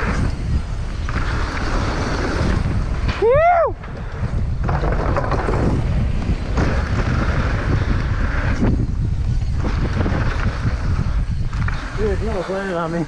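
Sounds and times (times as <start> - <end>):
bike tyres rumbling over dirt: 0.0 - 13.0
wind buffeting microphone: 0.0 - 13.0
bike knocks: 3.8 - 7.4.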